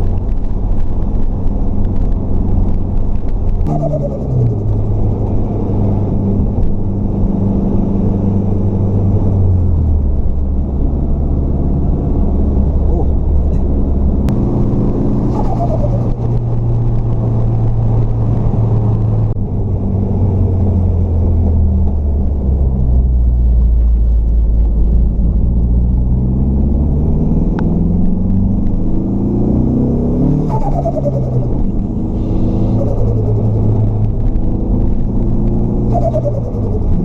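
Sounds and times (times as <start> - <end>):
car engine revving: 0.0 - 37.0
falling turbo whine: 3.2 - 7.0, 20.6 - 37.0.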